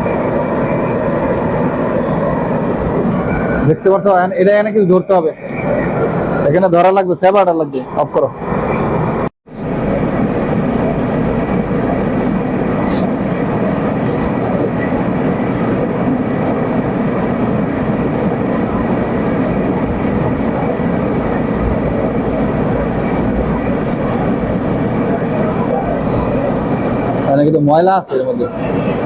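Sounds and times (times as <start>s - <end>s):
torch flame roaring: 7.8s - 27.4s.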